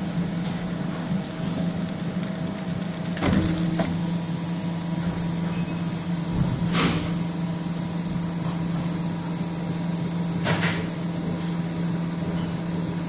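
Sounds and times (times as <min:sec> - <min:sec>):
machine humming: 0:00.0 - 0:10.4.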